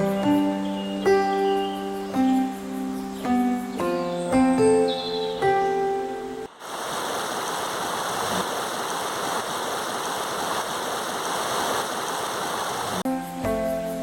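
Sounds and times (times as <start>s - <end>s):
flowing water rushing: 6.5s - 13.1s.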